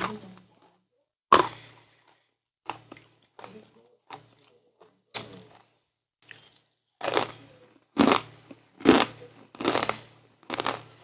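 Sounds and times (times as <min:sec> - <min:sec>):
crunchy snacks being chewed: 0:06.2 - 0:11.0.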